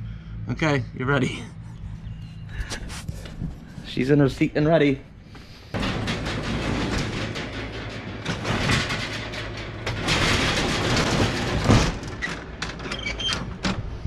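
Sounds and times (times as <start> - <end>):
motorhome engine low drone: 0.0 - 14.0
cabin rattles: 5.7 - 14.0.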